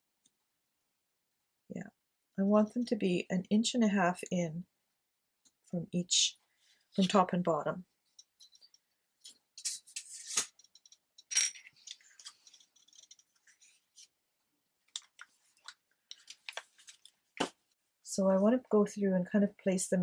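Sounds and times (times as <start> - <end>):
paper rustling: 14.9 - 17.6.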